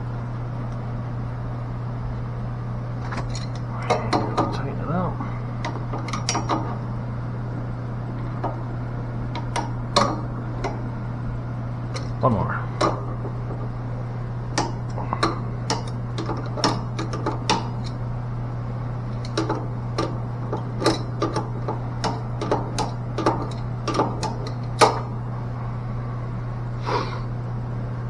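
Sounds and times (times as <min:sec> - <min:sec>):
steady low hum: 0:00.0 - 0:28.0
clicks and taps of tools: 0:19.2 - 0:25.1.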